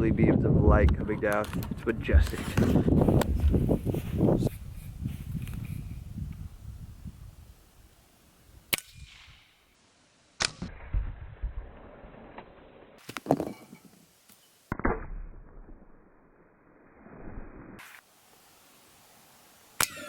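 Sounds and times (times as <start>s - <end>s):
pellet gun shots: 8.7s - 9.5s.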